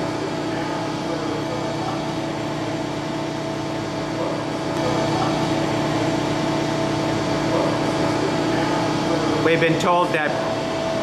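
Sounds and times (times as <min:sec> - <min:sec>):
machining center humming: 0:00.0 - 0:11.0.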